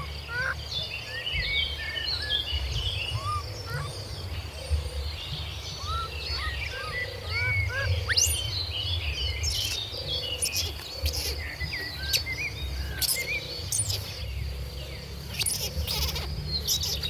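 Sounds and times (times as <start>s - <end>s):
high animal chirping calls: 8.1s - 8.5s, 9.5s - 17.0s.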